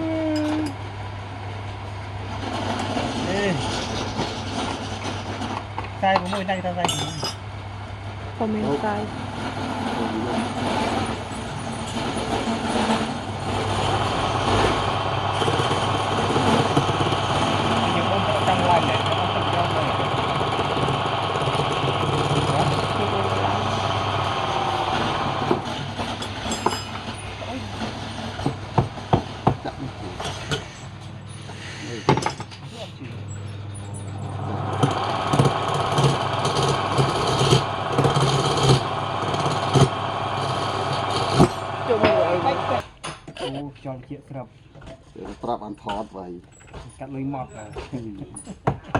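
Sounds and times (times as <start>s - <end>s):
woodworking machine motor running: 0.0s - 32.6s, 33.8s - 42.8s
engine humming steadily: 0.0s - 43.9s.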